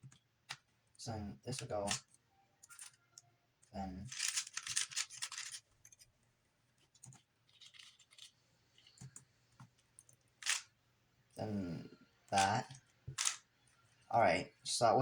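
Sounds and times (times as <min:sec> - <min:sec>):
puzzle cube clicking and turning: 0:01.5 - 0:02.1, 0:04.0 - 0:06.0, 0:07.1 - 0:08.3, 0:10.4 - 0:10.7, 0:12.4 - 0:13.4.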